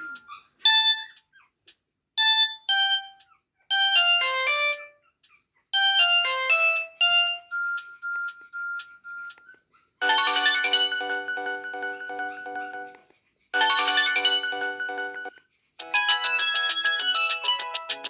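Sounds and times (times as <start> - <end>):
mobile phone ringtone melody: 10.0 - 13.0, 13.6 - 15.3, 15.9 - 18.0.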